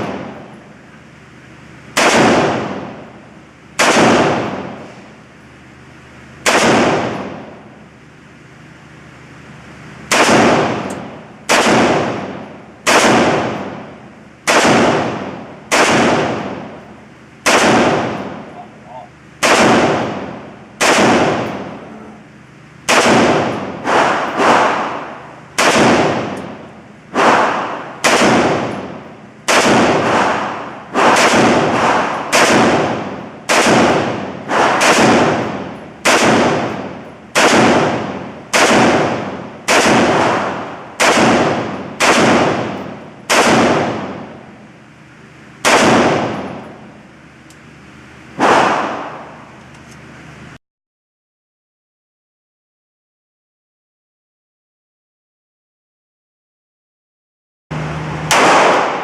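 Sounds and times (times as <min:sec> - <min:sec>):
gunshots with echo: 0:01.9 - 0:03.1, 0:03.8 - 0:04.9, 0:06.4 - 0:07.6, 0:10.1 - 0:16.8, 0:17.4 - 0:22.0, 0:22.9 - 0:44.4, 0:45.6 - 0:46.7, 0:48.4 - 0:49.5, 0:58.3 - 0:59.0.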